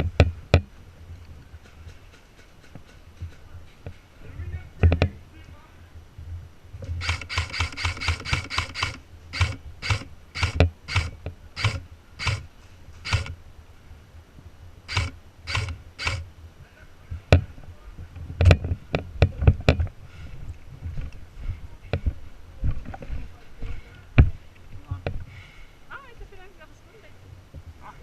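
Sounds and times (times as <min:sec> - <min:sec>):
airsoft gun shots: 0:07.0 - 0:13.3.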